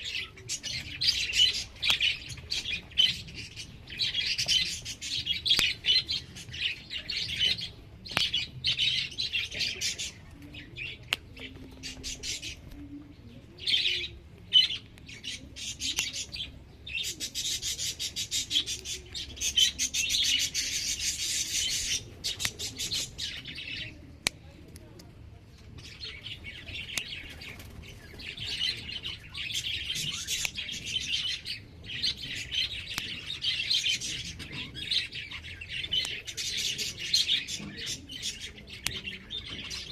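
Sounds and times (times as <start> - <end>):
small birds chirping: 0.0 - 39.9.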